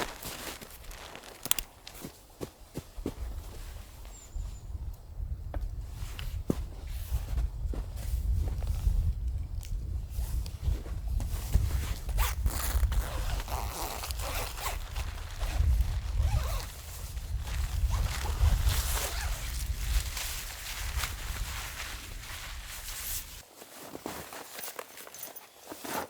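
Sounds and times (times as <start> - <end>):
zipper rasping: 12.1 - 16.7, 18.8 - 19.4.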